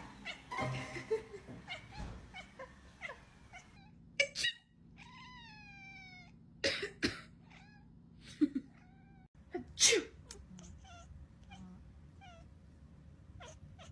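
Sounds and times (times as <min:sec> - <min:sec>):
cat meowing: 0:05.0 - 0:06.4, 0:07.4 - 0:07.9, 0:10.3 - 0:12.5, 0:13.4 - 0:13.9.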